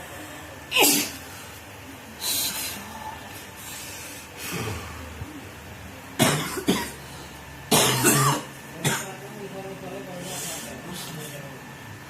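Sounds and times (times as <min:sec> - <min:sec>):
man coughing hard: 0:06.2 - 0:07.0, 0:07.7 - 0:09.2.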